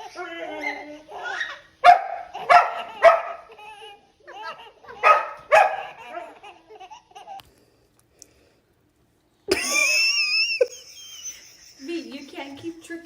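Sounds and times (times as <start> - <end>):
dog barking: 1.8 - 3.6, 4.4 - 6.4.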